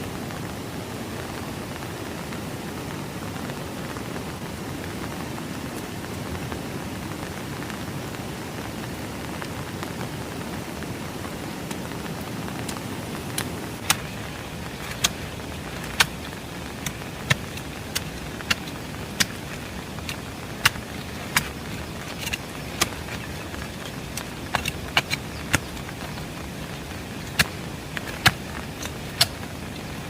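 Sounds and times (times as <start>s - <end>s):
steady rain falling: 0.0s - 30.0s
sharp ticks and clicks: 13.4s - 30.0s.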